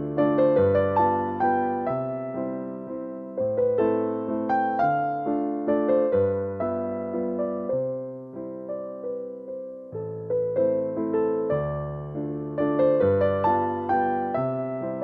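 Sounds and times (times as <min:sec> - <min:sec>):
gentle piano melody: 0:00.0 - 0:15.0.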